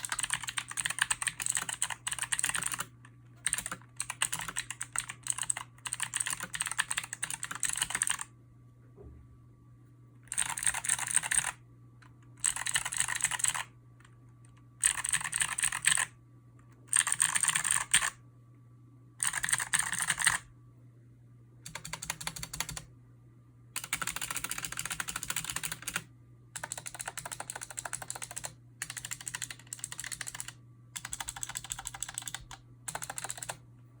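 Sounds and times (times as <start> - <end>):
clicky mechanical keyboard typing: 0.0 - 8.3, 10.3 - 16.1, 16.8 - 18.2, 19.2 - 20.5, 21.6 - 22.9, 23.8 - 33.6.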